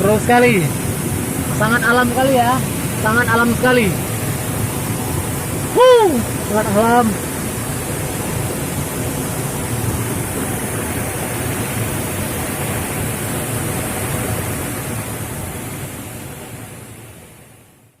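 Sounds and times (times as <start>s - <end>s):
waterfall roaring: 0.0s - 17.7s.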